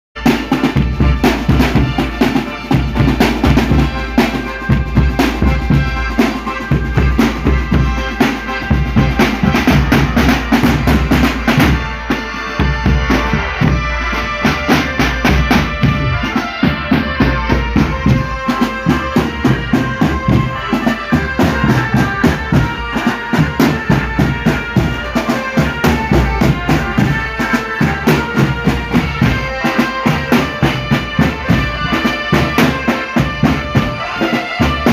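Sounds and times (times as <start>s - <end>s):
marching band drum beat: 0.2s - 34.9s
marching band melody: 0.2s - 34.9s.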